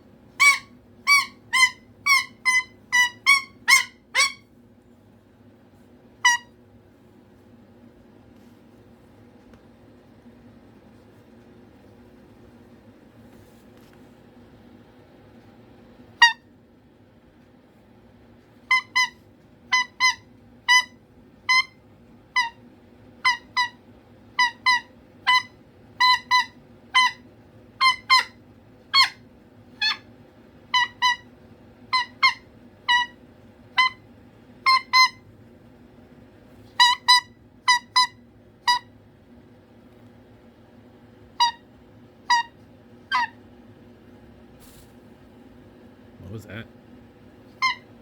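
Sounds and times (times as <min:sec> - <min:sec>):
cockatoo calling: 0:00.4 - 0:04.5, 0:06.2 - 0:06.6, 0:16.2 - 0:16.5, 0:18.6 - 0:22.6, 0:23.2 - 0:23.8, 0:24.4 - 0:30.1, 0:30.7 - 0:31.3, 0:31.9 - 0:34.0, 0:34.6 - 0:35.2, 0:36.8 - 0:38.9, 0:41.4 - 0:43.4, 0:47.5 - 0:48.0.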